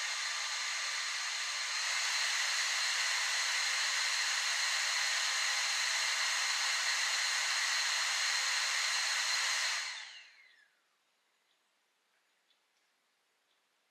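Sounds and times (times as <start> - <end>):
portable fan whirring: 0.0 - 10.7.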